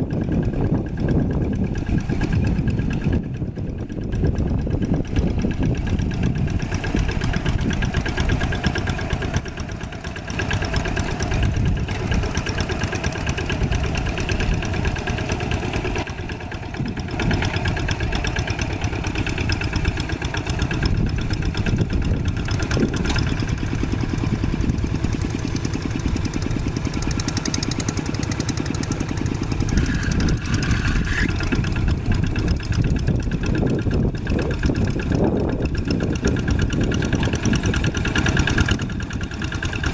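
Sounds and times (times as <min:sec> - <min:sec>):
old tractor engine running: 0:00.0 - 0:39.9.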